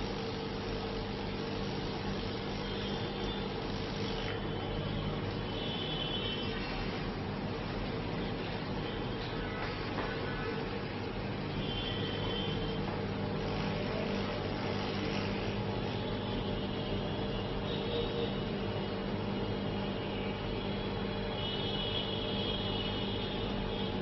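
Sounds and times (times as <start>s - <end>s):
electrical hum: 0.0s - 24.0s.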